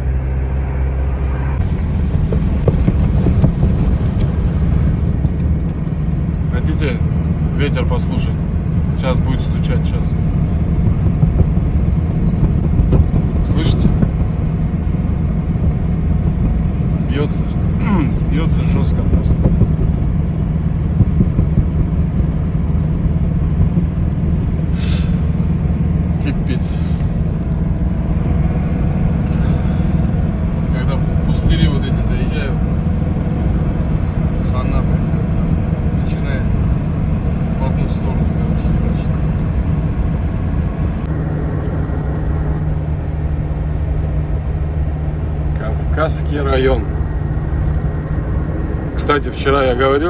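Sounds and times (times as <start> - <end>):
diesel truck engine running: 0.0 - 50.0
gusting wind noise: 0.0 - 50.0
road rumble: 0.0 - 50.0
brief hissing rush: 24.7 - 25.4.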